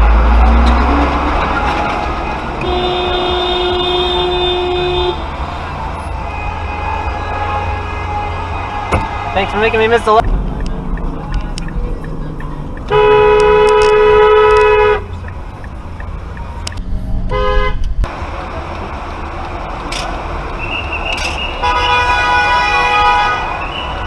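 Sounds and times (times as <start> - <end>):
road noise: 0.0 - 24.0
car horn honking: 1.4 - 11.8, 12.7 - 15.3, 17.2 - 17.9, 19.9 - 24.0.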